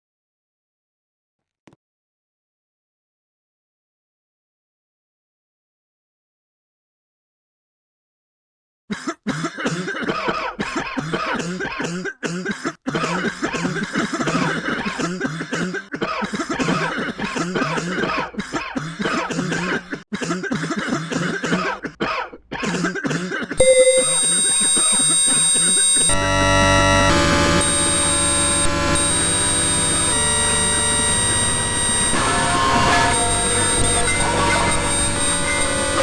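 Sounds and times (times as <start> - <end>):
person coughing: 8.9 - 23.6
throat clearing: 8.9 - 23.6
harsh electronic tones: 23.6 - 36.0.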